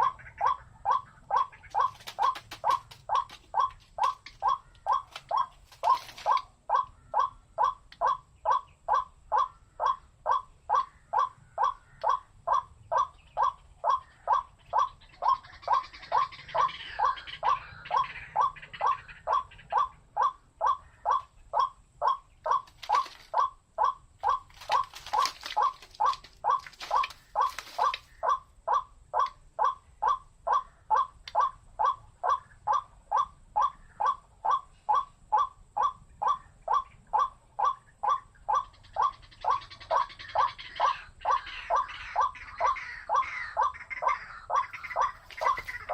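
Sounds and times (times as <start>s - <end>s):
soft chattering bird calls: 0.0s - 45.9s
waterhen calling wak notes: 0.0s - 45.9s.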